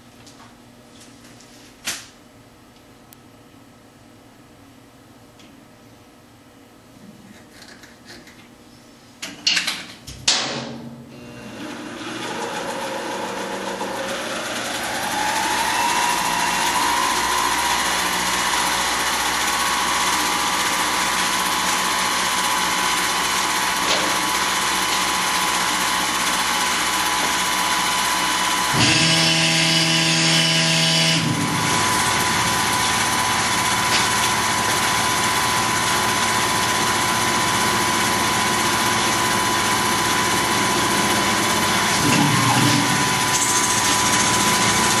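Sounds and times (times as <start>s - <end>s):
milling machine whining: 11.4s - 45.0s.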